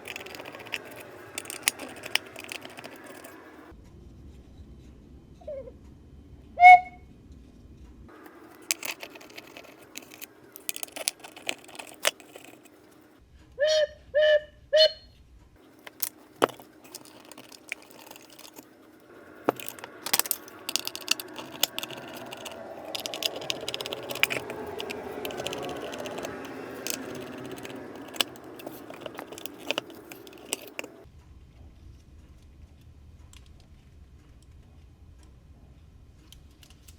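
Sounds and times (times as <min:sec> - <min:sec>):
clock mechanism clicks and rattles: 0:00.0 - 0:03.7, 0:08.1 - 0:13.0, 0:15.7 - 0:31.1.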